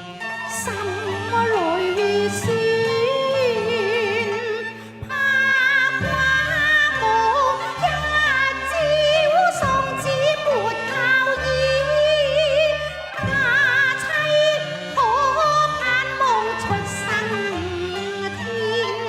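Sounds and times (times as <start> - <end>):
opera singing with heavy vibrato: 0.0 - 19.0
sustained instrumental accompaniment: 0.0 - 19.0.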